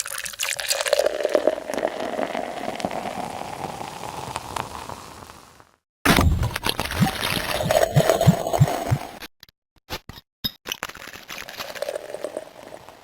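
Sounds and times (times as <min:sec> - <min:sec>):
liquid pouring and glugging: 0:00.0 - 0:03.8, 0:06.3 - 0:09.2, 0:11.5 - 0:13.0.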